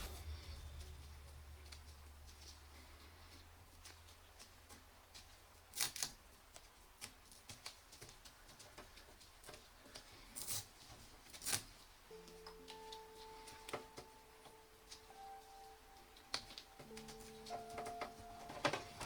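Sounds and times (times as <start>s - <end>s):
clicks and rustles of computer parts: 16.2s - 19.0s.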